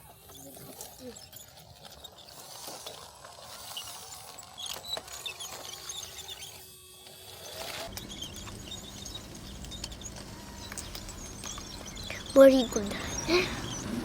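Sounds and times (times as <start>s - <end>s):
small electric motors whirring: 0.0s - 14.0s.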